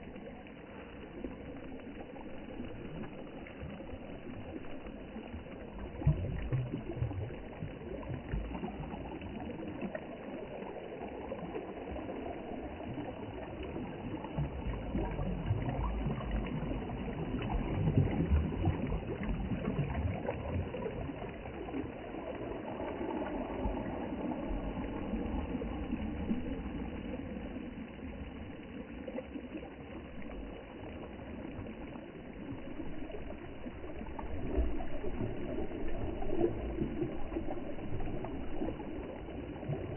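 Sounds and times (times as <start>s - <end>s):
sea water washing and surging: 0.0s - 39.9s
low rumble: 13.8s - 39.9s.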